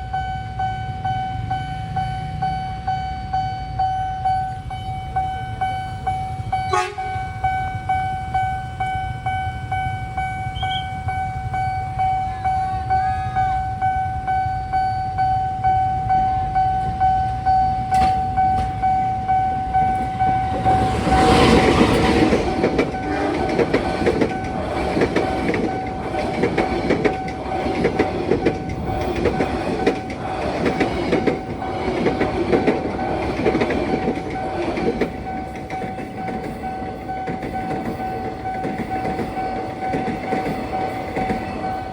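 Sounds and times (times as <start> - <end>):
level crossing alarm: 0.0 - 41.9
train wheels clattering: 16.8 - 41.9.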